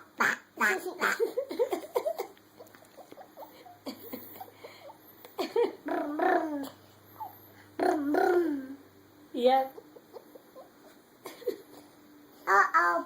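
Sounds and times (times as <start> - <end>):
toddler making vocal noises: 5.9 - 6.8, 7.8 - 8.8, 12.4 - 13.0.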